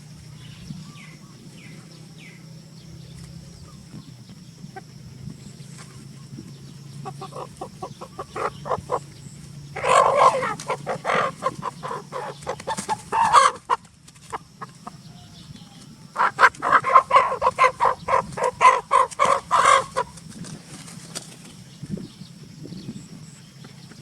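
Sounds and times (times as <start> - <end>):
short harsh animal calls: 9.7 - 13.6, 16.2 - 20.1.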